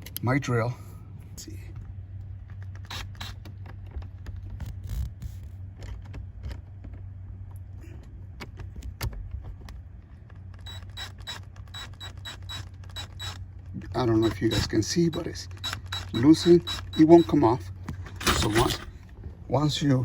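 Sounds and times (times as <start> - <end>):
drill bit clicking and scraping: 2.6 - 3.6, 10.6 - 19.0
rapid even drill clicking: 2.6 - 3.6, 10.6 - 17.5.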